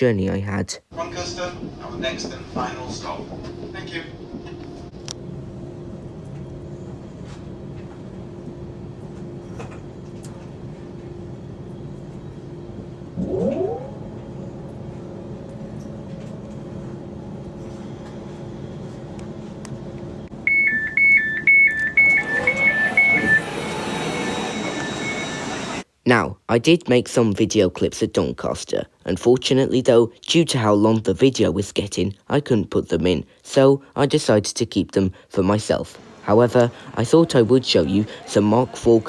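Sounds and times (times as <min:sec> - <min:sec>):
electric train hum and whine: 0:01.0 - 0:25.9, 0:35.9 - 0:39.0
two-tone door alert beeps: 0:20.5 - 0:25.8.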